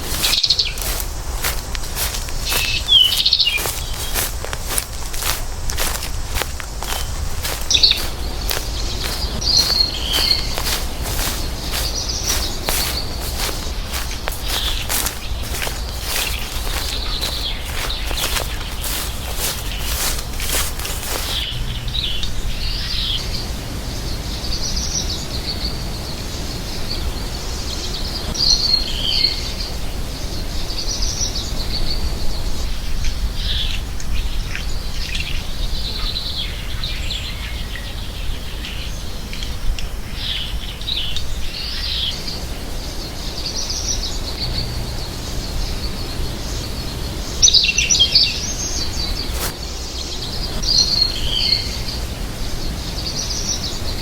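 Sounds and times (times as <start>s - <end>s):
goldfinch twittering song: 0.0s - 29.8s, 43.1s - 54.0s.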